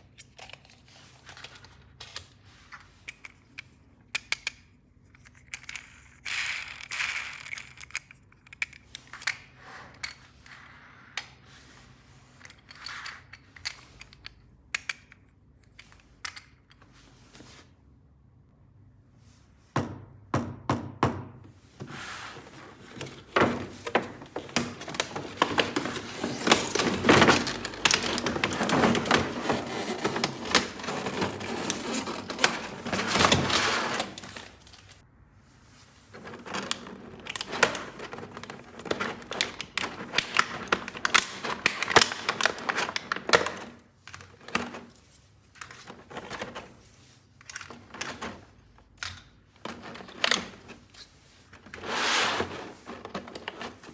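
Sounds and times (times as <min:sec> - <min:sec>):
packaging crinkling: 0:22.9 - 0:35.0.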